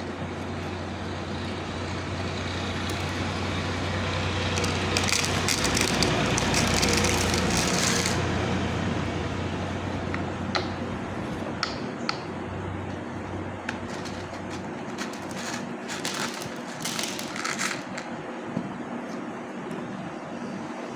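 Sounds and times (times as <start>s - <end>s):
gravel pouring and rattling: 2.6s - 8.2s, 13.8s - 18.0s.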